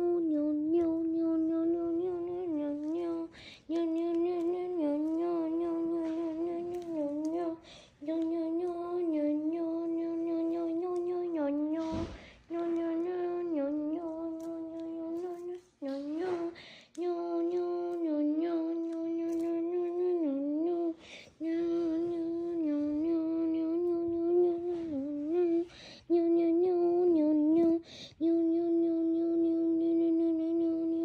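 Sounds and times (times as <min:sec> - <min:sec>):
short breaths: 0:03.3 - 0:03.7, 0:07.6 - 0:08.0, 0:12.0 - 0:12.5, 0:16.5 - 0:17.0, 0:21.0 - 0:21.4, 0:25.7 - 0:26.1, 0:27.8 - 0:28.2.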